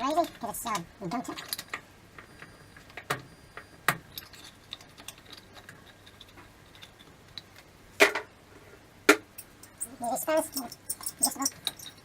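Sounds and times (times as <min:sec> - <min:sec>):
metal clatter: 0:09.4 - 0:12.0.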